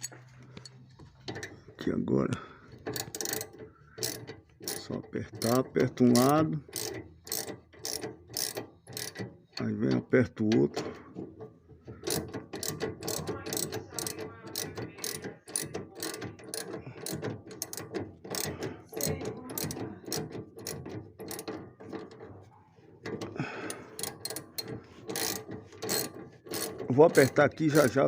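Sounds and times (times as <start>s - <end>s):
ratchet wrench clicking: 2.7s - 10.0s, 10.6s - 22.2s, 23.0s - 28.0s.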